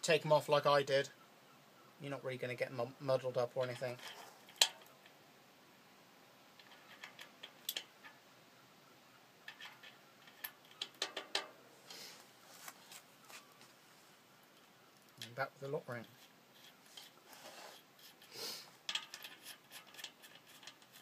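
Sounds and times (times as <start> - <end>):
light metal clicks and taps: 9.5 - 11.5, 18.9 - 21.0.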